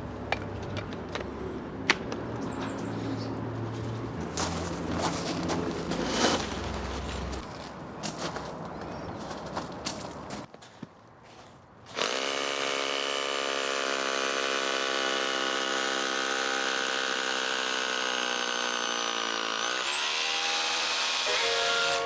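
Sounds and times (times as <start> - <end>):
rotary hammer drilling into concrete: 12.0 - 21.2.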